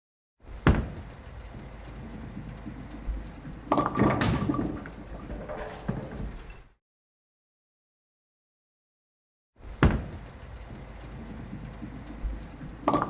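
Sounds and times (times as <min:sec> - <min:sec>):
handling noise: 0:02.2 - 0:06.7.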